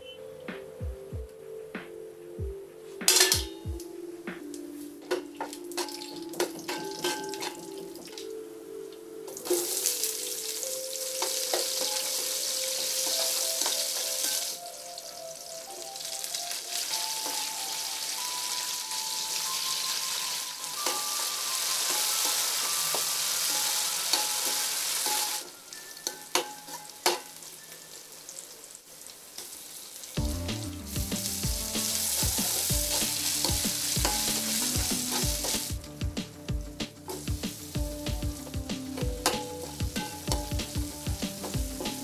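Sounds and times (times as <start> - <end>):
background music with beat: 0.0 - 26.8, 30.2 - 42.0
food sizzling in a pan: 9.3 - 42.0.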